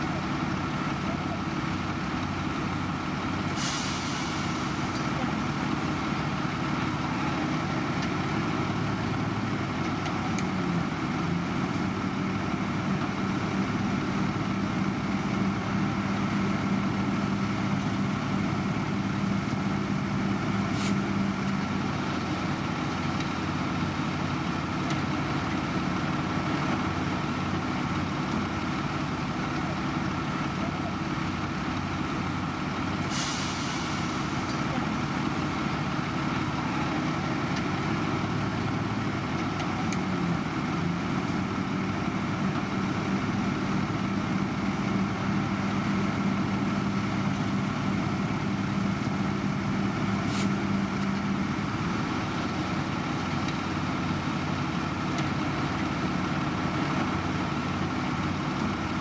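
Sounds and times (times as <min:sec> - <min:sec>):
heavy diesel engines running: 0:00.0 - 0:59.0
burst of hiss: 0:33.1 - 0:34.4.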